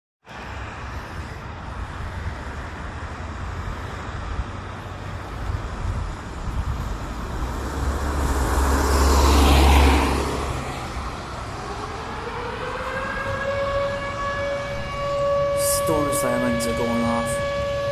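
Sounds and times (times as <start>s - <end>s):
road traffic noise: 0.2s - 17.9s
car passing close: 6.3s - 13.6s
tornado siren winding up: 11.5s - 17.9s.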